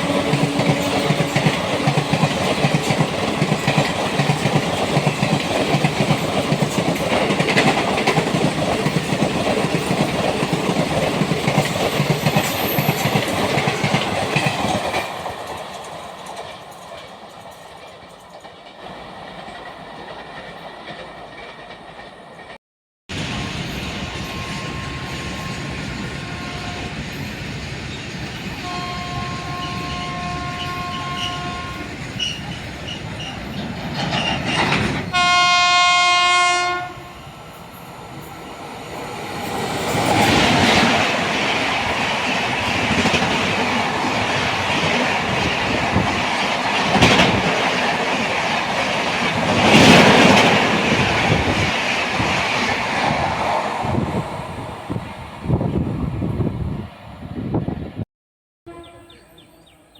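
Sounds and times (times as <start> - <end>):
train horn: 0.0 - 2.9, 24.2 - 27.2, 28.6 - 32.0, 35.1 - 37.3, 58.6 - 59.9
train rushing past: 0.0 - 58.0
wheels clattering over rail joints: 32.1 - 35.1.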